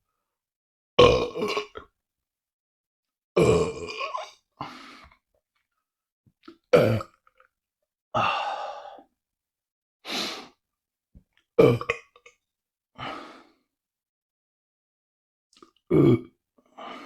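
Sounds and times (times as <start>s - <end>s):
man burping: 1.0s - 1.8s, 3.4s - 4.4s, 6.5s - 7.2s, 11.6s - 12.3s, 15.9s - 16.4s.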